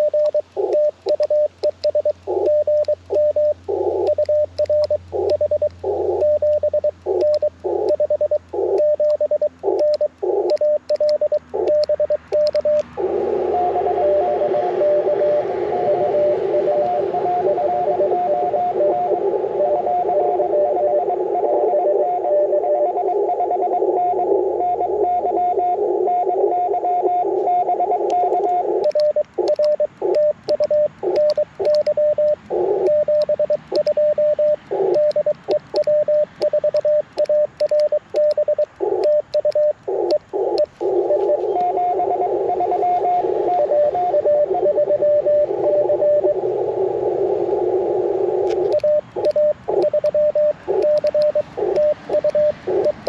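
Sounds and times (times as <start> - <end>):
morse sidetone keying: 0.0 - 13.2, 27.6 - 45.2, 48.3 - 53.0
faint incoming morse code: 0.0 - 46.6, 47.4 - 53.0
radio hiss: 0.0 - 53.0.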